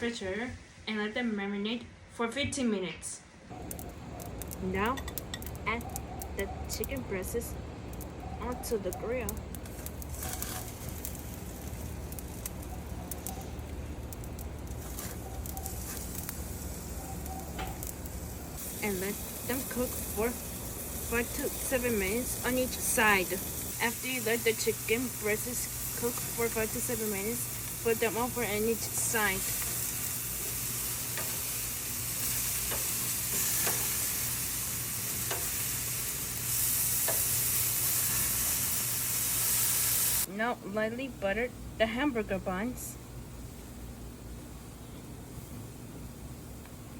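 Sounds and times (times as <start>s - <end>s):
chicken sizzling on a grill: 3.5s - 40.3s, 44.7s - 46.9s
sharp crackles: 3.5s - 40.3s.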